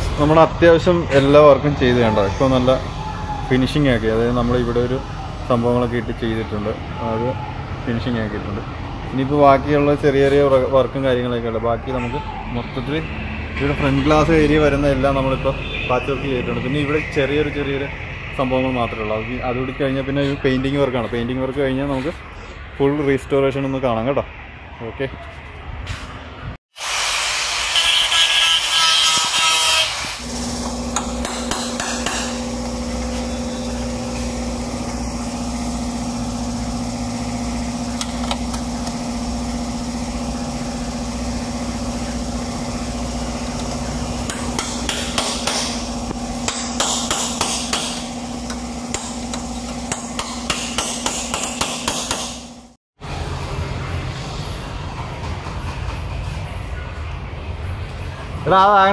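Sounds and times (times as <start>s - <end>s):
grinder noise: 26.8s - 52.8s
steady machine hum: 30.1s - 52.8s
hammering on metal: 30.9s - 32.4s, 44.3s - 52.6s.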